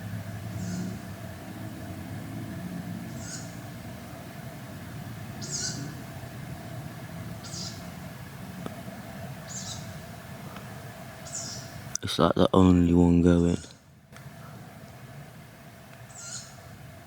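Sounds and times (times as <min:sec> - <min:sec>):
low background rumble: 0:00.0 - 0:17.0
bird short high call: 0:03.1 - 0:03.6, 0:16.1 - 0:16.6.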